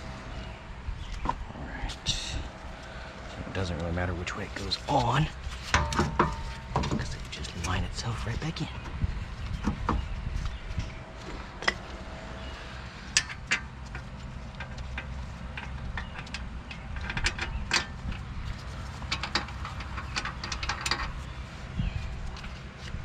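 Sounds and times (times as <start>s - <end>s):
steady low rumble: 0.0s - 23.0s
metallic clicks of wheel bolts: 5.5s - 7.8s, 13.1s - 21.5s.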